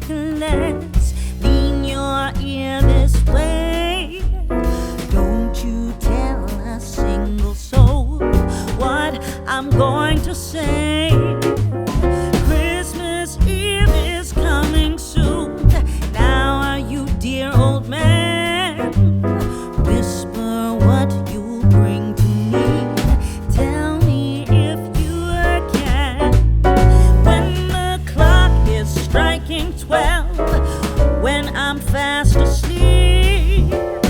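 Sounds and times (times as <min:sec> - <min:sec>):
song with singing over piano: 0:00.0 - 0:34.0.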